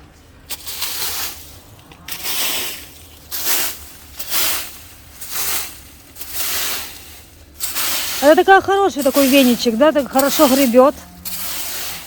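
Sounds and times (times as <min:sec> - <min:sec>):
hand broom sweeping leaves: 0:00.4 - 0:12.0.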